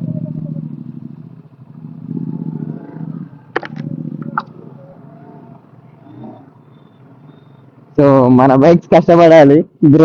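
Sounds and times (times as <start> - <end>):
motorcycle rattling clacks: 0.0 - 8.0
motorcycle engine running: 0.0 - 10.0.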